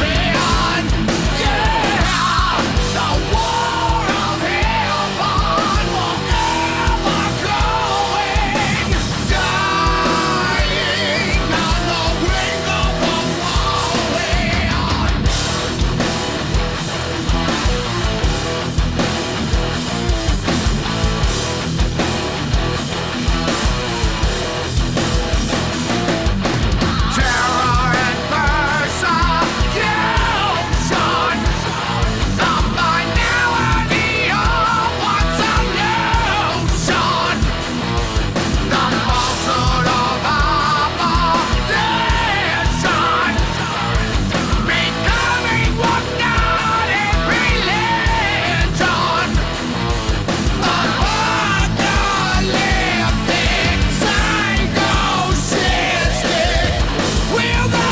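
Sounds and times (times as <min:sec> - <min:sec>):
person singing: 0:00.0 - 0:15.3, 0:27.0 - 0:37.6, 0:38.7 - 0:49.5, 0:50.6 - 0:57.9
heavy rock music: 0:00.0 - 0:57.9.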